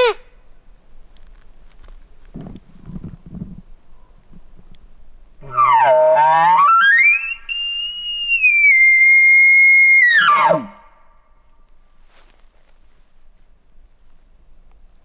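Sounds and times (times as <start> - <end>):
elk bugling: 0.0 - 0.3, 2.3 - 4.8, 5.4 - 11.0.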